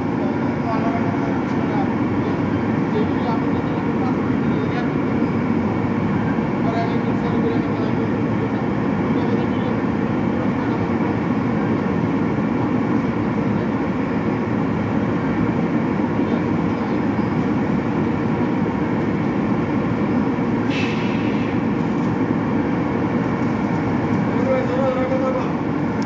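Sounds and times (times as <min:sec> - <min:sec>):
machinery rumbling: 0:00.0 - 0:26.0
brief high hiss: 0:20.7 - 0:22.0.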